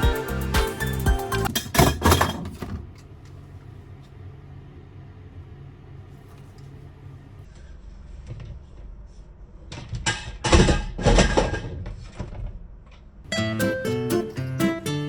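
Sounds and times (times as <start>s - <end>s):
acoustic guitar music: 0.0s - 1.6s, 13.3s - 15.0s
household things knocking and rustling: 1.5s - 2.9s.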